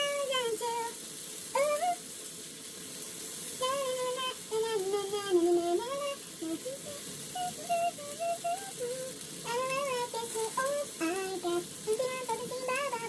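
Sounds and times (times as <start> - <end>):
person humming a tune: 1.6 - 2.0, 3.6 - 13.0.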